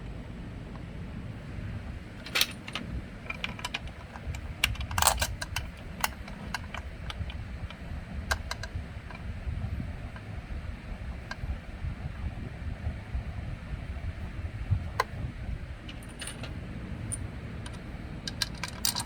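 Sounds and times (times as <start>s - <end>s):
low background rumble: 0.0s - 19.0s
metal tools clinking: 2.2s - 4.1s, 15.9s - 19.0s
metal rattle: 2.2s - 7.2s, 15.9s - 19.0s.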